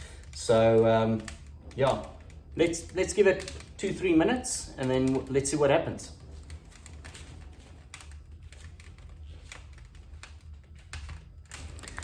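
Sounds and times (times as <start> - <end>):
steady low hum: 0.0 - 12.0
wood fire crackling: 0.0 - 12.0.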